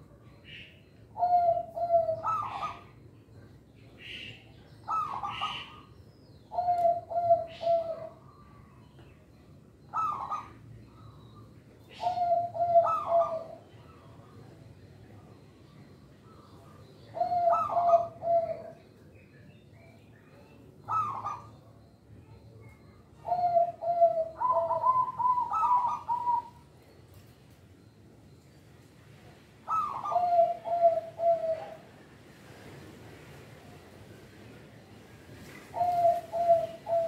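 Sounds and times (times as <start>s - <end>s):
dove cooing: 1.2s - 3.0s, 4.9s - 5.9s, 6.5s - 8.7s, 9.8s - 11.2s, 11.8s - 14.2s, 16.6s - 18.8s, 20.8s - 21.9s, 22.8s - 26.7s, 29.6s - 32.0s, 35.6s - 37.0s.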